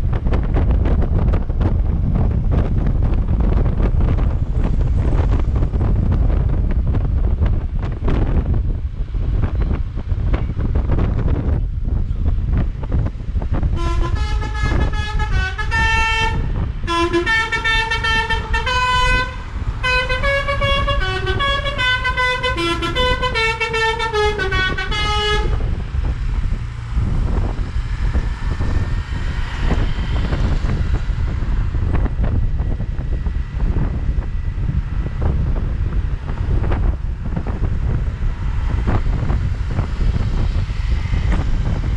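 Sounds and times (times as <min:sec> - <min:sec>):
steady low rumble: 0:00.0 - 0:41.9
bus horn melody: 0:13.7 - 0:25.7.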